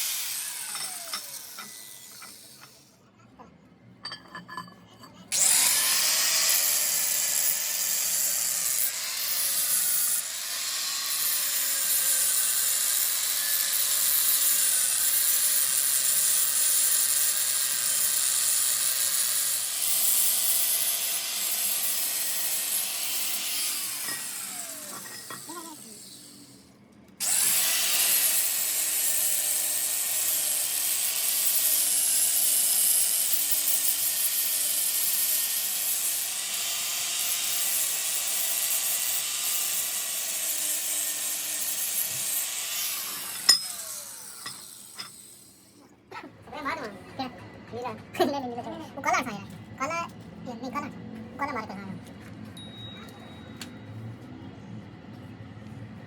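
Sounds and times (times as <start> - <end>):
power tool grinding metal: 0.0 - 3.0, 5.0 - 26.6, 27.2 - 45.7.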